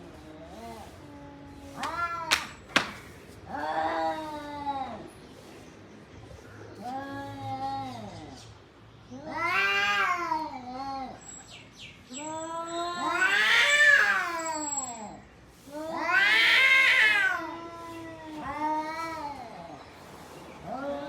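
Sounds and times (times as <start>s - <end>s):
cat yowling: 12.2s - 15.2s, 15.8s - 19.6s.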